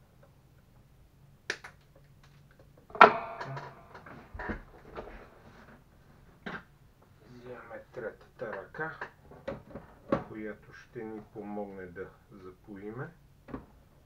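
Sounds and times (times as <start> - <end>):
tools clicking and knocking: 1.8 - 4.2
loud ringing clatter: 2.9 - 4.1.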